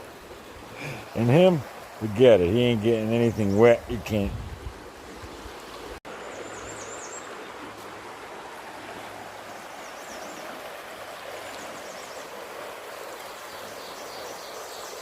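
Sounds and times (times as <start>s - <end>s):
river rushing over rocks: 4.7s - 15.0s.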